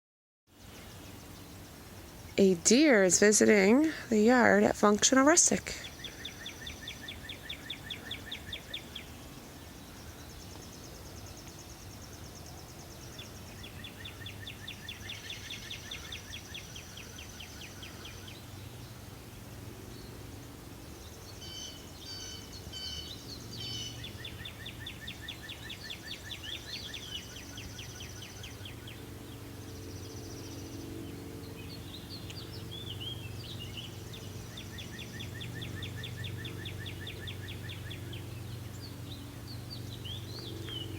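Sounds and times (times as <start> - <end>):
birds singing trills: 0.7 - 40.9.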